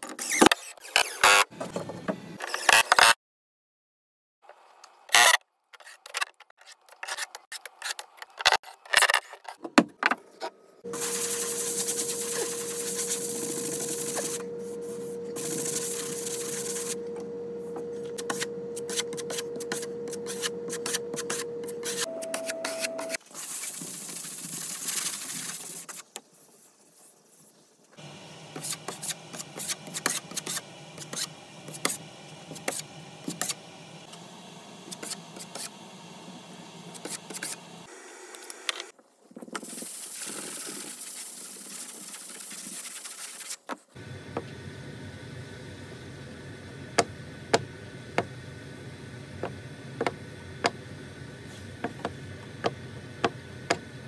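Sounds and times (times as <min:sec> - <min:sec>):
steady hum: 0:10.9 - 0:23.2, 0:28.0 - 0:37.9.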